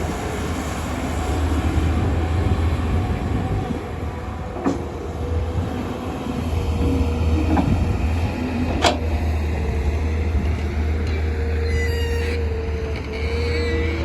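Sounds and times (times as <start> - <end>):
excavator diesel engine rumbling: 0.0 - 14.0
short high squeal: 11.6 - 12.5.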